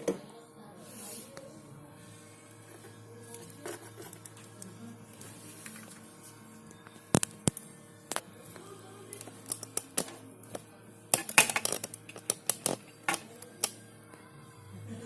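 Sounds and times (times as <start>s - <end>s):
clicks and rattles of small parts: 11.1s - 13.8s.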